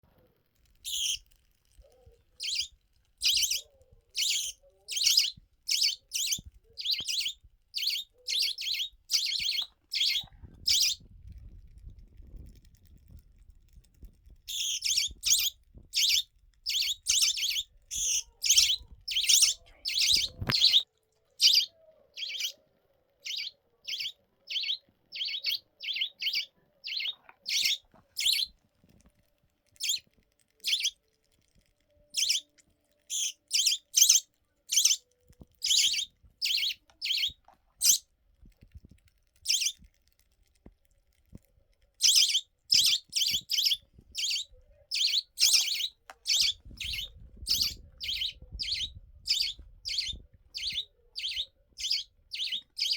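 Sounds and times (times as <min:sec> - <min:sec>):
budgerigar chirping: 0:00.9 - 0:01.2, 0:02.4 - 0:11.0, 0:14.5 - 0:22.6, 0:23.2 - 0:28.5, 0:29.8 - 0:30.0, 0:30.6 - 0:31.0, 0:32.2 - 0:32.5, 0:33.1 - 0:35.0, 0:35.6 - 0:38.0, 0:39.5 - 0:39.8, 0:42.0 - 0:52.9.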